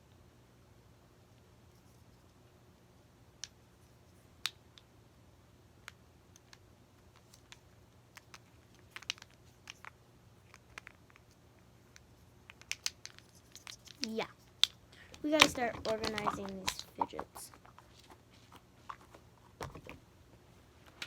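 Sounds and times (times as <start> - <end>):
fidget toy clicking: 12.5 - 17.6.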